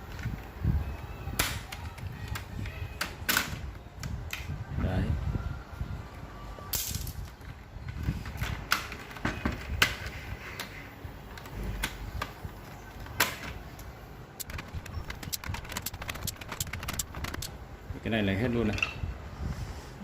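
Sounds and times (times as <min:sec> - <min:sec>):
plastic clicks and snaps: 0:13.0 - 0:17.5.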